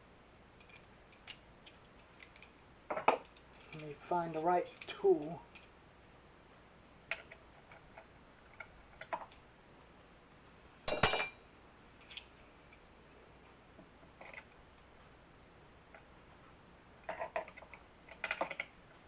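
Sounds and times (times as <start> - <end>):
tools clattering: 10.9 - 11.4
metal hand tools clinking: 10.9 - 11.5.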